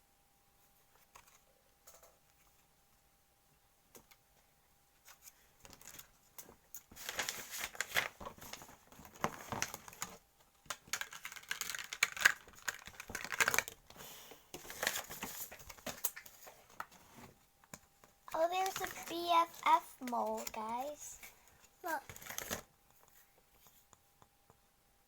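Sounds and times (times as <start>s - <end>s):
plastic packaging crinkling: 6.7s - 13.8s, 18.3s - 21.3s, 22.0s - 22.7s.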